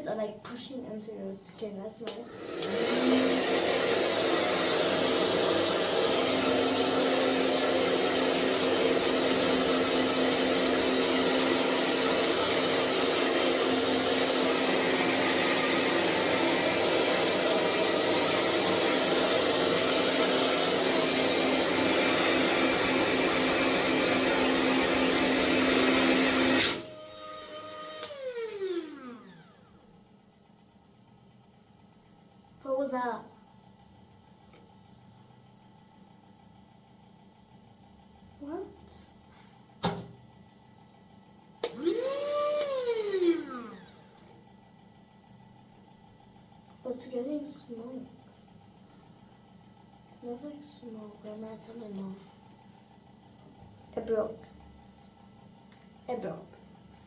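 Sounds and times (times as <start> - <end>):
hair dryer switch click: 2.0 - 2.8, 26.6 - 26.9, 28.0 - 28.2, 41.6 - 41.8
hair dryer blowing: 2.1 - 29.9, 41.6 - 45.2
motor whining down: 2.4 - 29.8, 41.6 - 44.2.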